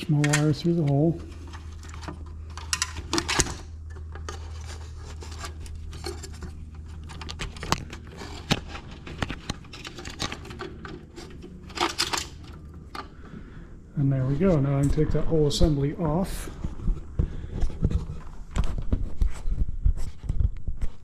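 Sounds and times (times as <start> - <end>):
plastic connectors clicking and scraping: 0.0 - 13.2
steady low hum: 0.0 - 21.0.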